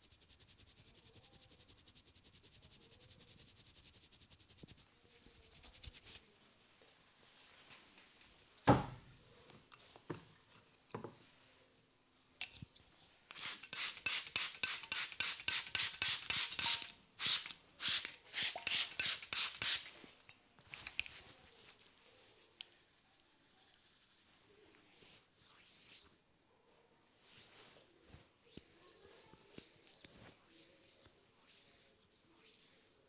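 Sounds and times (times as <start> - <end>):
massage strokes rubbing skin: 0.0 - 6.8, 23.4 - 26.2, 28.6 - 33.0.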